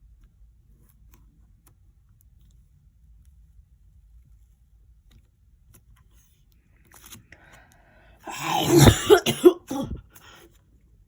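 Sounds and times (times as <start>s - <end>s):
girl coughing: 8.3s - 10.1s.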